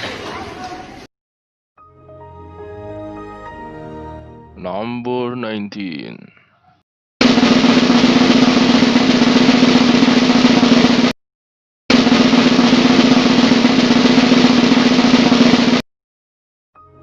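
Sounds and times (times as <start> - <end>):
snare drum roll: 7.2 - 11.2, 11.9 - 15.8.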